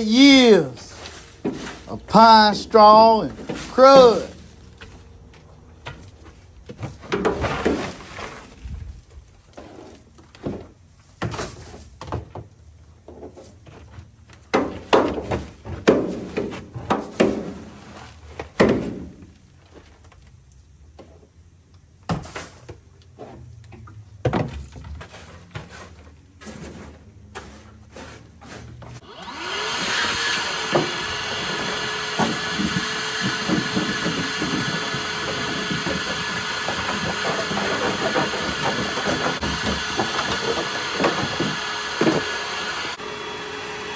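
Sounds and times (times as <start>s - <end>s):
motor running with rushing air: 29.0s - 43.9s
debris knocking and rustling: 29.7s - 42.5s.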